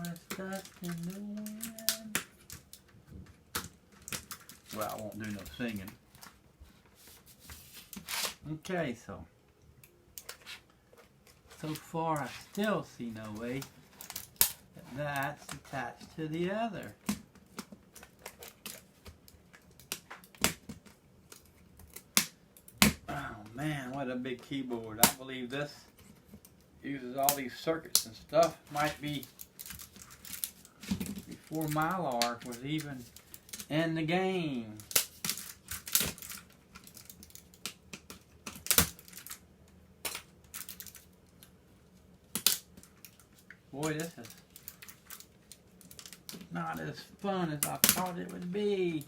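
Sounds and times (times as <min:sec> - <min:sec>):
plastic keyboard parts clicking: 0:00.0 - 0:05.9.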